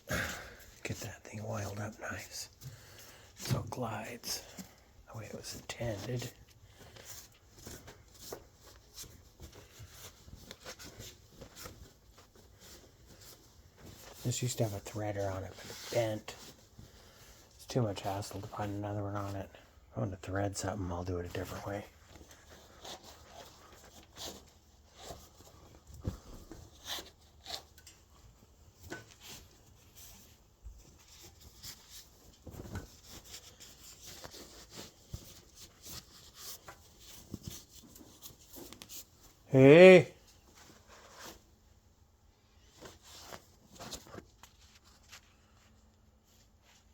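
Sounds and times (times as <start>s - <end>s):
handling scraping and rustling: 0.7s - 19.4s, 20.9s - 41.7s, 42.5s - 46.9s
light clicks and rubbing of metal parts: 20.4s - 39.4s.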